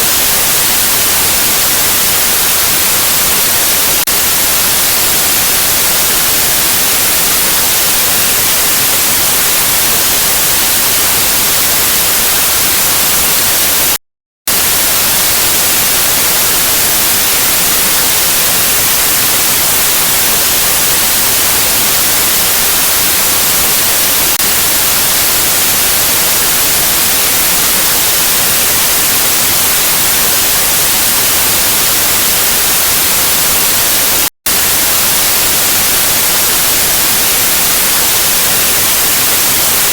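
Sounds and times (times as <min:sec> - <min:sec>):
static hiss: 0:00.0 - 0:39.9.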